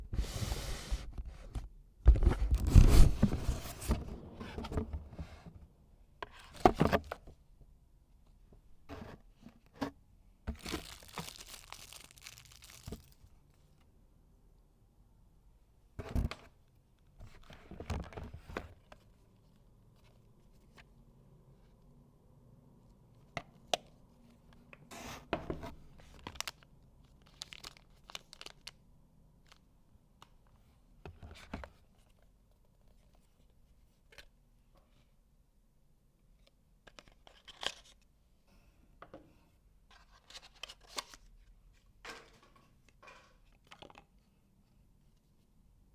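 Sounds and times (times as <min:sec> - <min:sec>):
packaging tearing and crinkling: 0:10.6 - 0:13.2.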